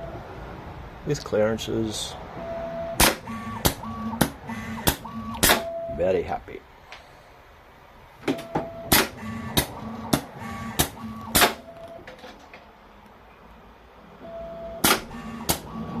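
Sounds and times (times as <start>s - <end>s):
steady machine hum: 2.6s - 6.0s, 8.4s - 11.8s.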